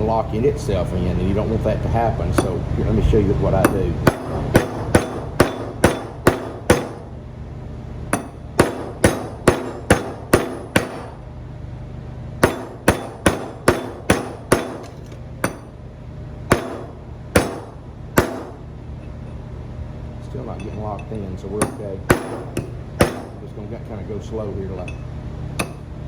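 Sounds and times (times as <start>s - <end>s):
hammer tapping steel on steel: 2.4s - 2.6s, 3.6s - 7.1s, 8.2s - 11.2s, 12.4s - 15.8s, 16.5s - 18.6s, 20.6s - 23.4s, 25.6s - 25.9s.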